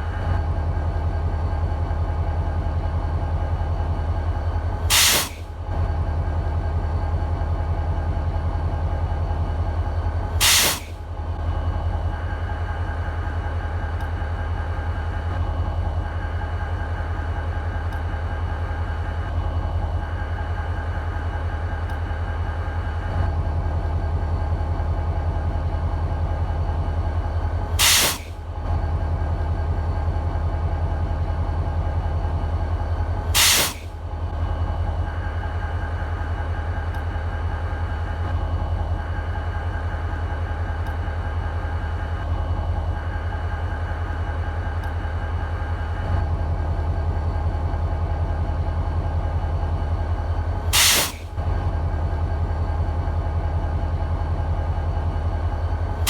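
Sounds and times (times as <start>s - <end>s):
diesel locomotive idling: 0.0s - 56.0s
loud air hiss bursts: 4.9s - 5.4s, 10.4s - 11.0s, 27.8s - 28.4s, 33.4s - 33.9s, 50.7s - 51.3s.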